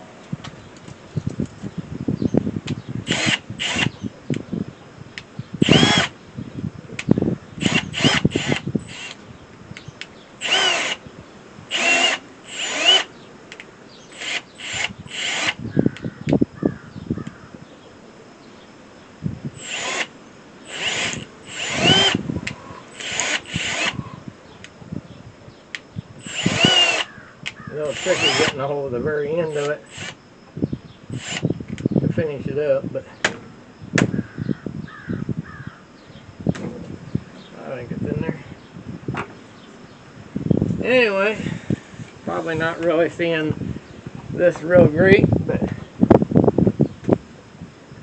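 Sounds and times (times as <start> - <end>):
power drill bursts: 3.0 - 4.0, 5.6 - 6.1, 7.6 - 9.2, 10.4 - 11.0, 11.7 - 13.1, 14.1 - 15.6, 19.6 - 22.2, 22.9 - 24.0, 26.2 - 27.1, 27.7 - 28.7, 29.4 - 30.2, 31.1 - 31.5.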